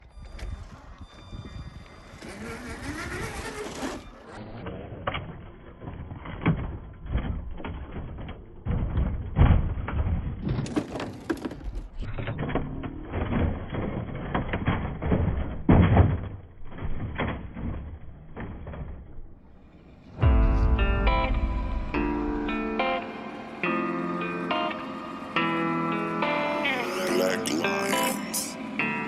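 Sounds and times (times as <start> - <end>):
small electric motor whining: 0.1 - 4.4
knocks and crunching from tyres: 3.8 - 19.7.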